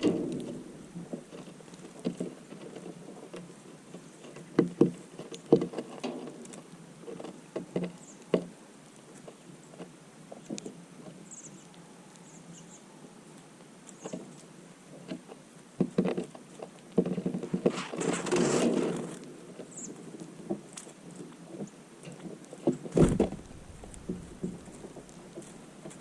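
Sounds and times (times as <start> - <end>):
birds pecking and hopping: 0.0 - 26.0
faint high bird chirps: 11.2 - 13.1.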